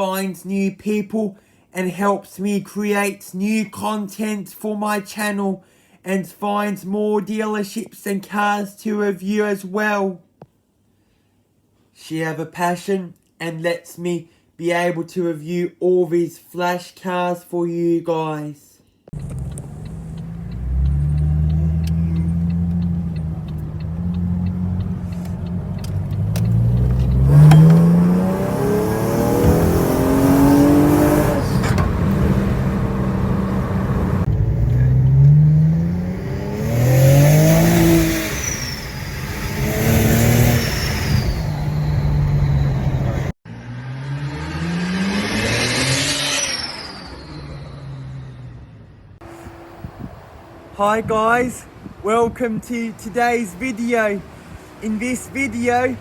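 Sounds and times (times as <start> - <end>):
car engine revving through gears: 19.1 - 50.5.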